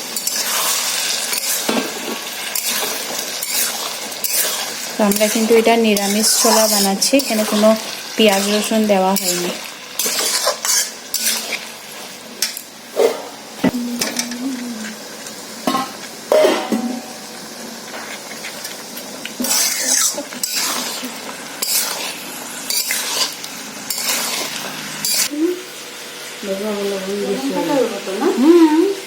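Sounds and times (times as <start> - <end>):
low sizzle: 0.0 - 29.0
metal spoon scraping pan: 0.2 - 1.9, 2.5 - 11.6, 19.4 - 25.3.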